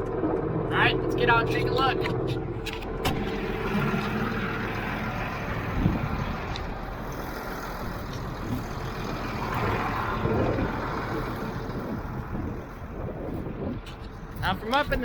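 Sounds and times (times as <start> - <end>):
tractor engine running: 0.0 - 15.0.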